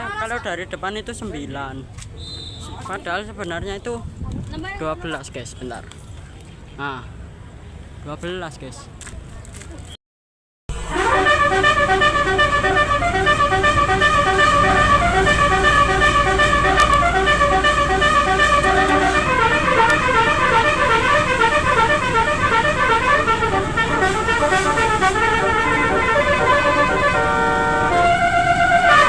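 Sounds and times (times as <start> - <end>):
engine rumble: 10.7 - 29.0
multi-trumpet horn playing tune: 10.7 - 29.0.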